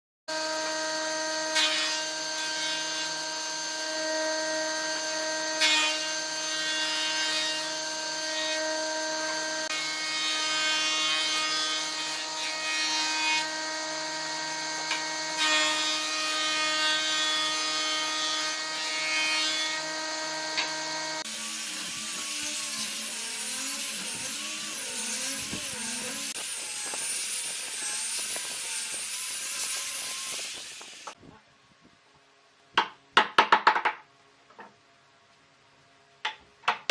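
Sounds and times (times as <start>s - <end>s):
power tool whining hum: 0.3s - 10.6s, 11.4s - 16.8s, 17.6s - 31.2s.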